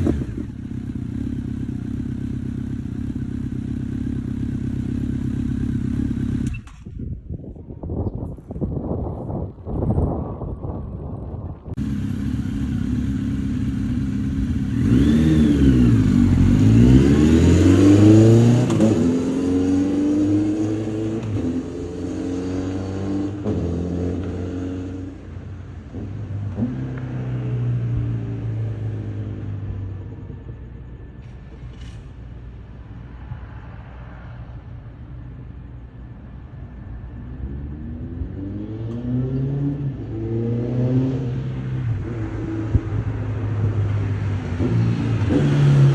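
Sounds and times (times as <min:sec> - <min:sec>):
motorcycle engine idling and revving: 0:00.0 - 0:45.9.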